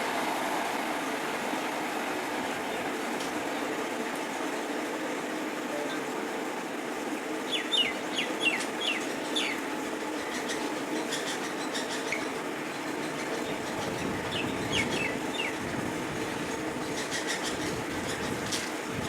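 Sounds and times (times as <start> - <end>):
bird chirping: 7.5 - 9.6.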